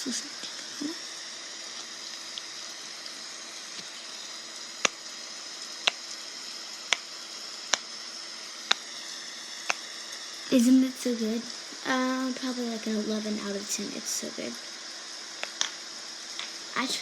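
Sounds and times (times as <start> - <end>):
faint steady hiss: 0.0 - 17.0
fidget toy clicks: 4.8 - 5.0, 5.8 - 6.1, 6.8 - 7.9, 9.6 - 9.9.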